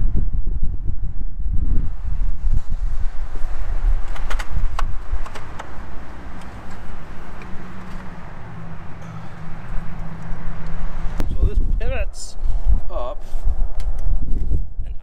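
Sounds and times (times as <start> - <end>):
wind on microphone: 0.0 - 15.0
sharp metallic clicks: 4.1 - 6.8.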